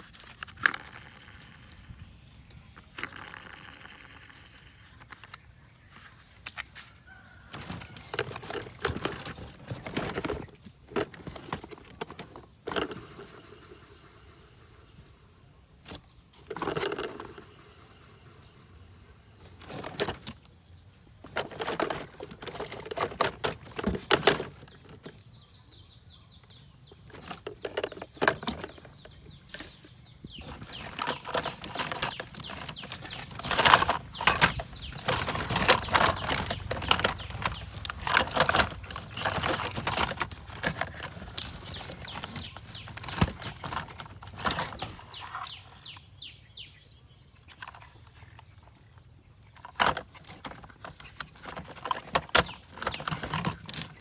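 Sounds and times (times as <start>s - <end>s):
toy cars clicking and rattling: 30.4s - 45.5s.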